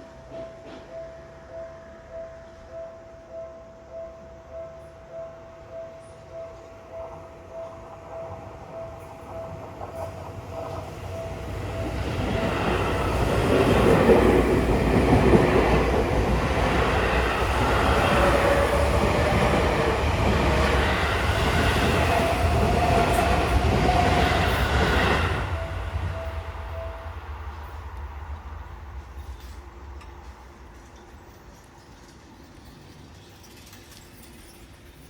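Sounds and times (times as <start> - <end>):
crossing warning bell: 0.0 - 35.0
electric train passing: 0.0 - 35.0.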